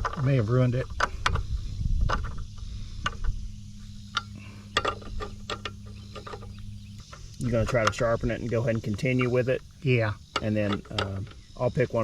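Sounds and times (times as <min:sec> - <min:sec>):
low hum: 0:00.0 - 0:12.0
chain metal clicks and rattles: 0:04.0 - 0:09.3.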